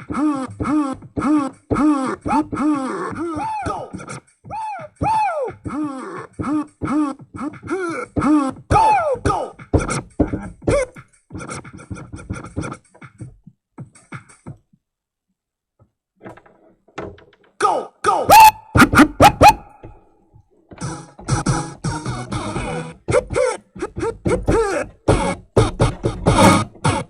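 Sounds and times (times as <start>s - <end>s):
voice-like keyboard sound effects: 0.0s - 9.6s.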